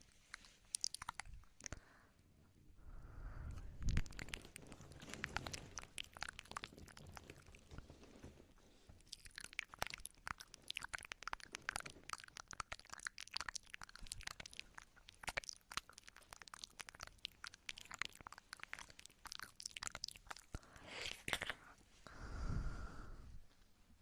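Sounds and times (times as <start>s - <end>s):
wet mouth clicks and smacks: 0.0s - 1.8s, 3.5s - 7.8s, 9.0s - 21.7s.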